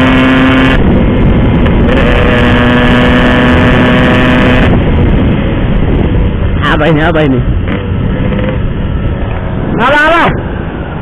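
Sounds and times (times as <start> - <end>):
two-stroke motorcycle engine: 0.0 - 6.6, 7.5 - 8.8
wind rush on microphone: 0.0 - 11.0.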